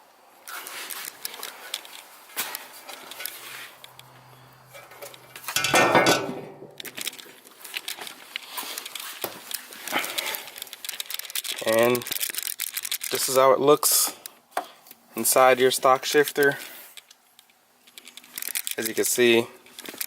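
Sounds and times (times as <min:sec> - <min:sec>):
scraping rustle: 0:00.5 - 0:05.8, 0:06.8 - 0:14.1
light clicks and clinks: 0:00.7 - 0:15.0, 0:16.0 - 0:20.0.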